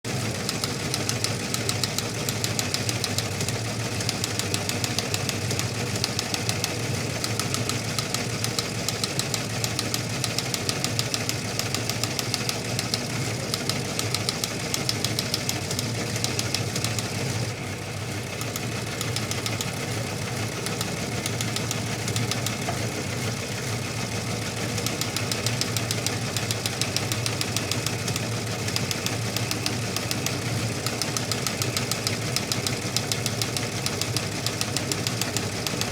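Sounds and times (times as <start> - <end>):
teletype machine clattering: 0.1 - 35.9.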